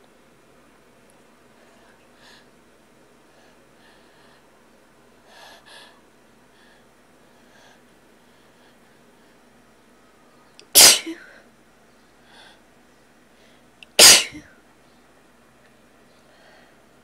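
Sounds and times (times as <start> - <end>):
person sneezing: 10.8 - 11.3, 14.0 - 14.5.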